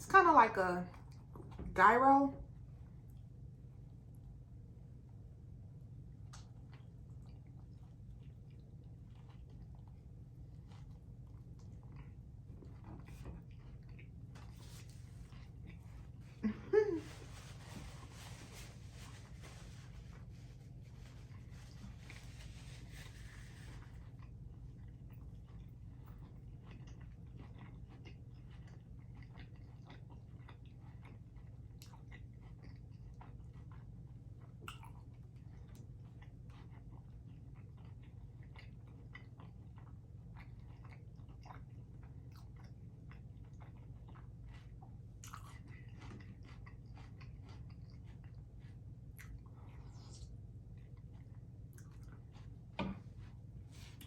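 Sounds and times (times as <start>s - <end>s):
steady low hum: 0.0s - 54.0s
person chewing food: 6.0s - 54.0s
wet mouth clicks: 34.6s - 35.0s.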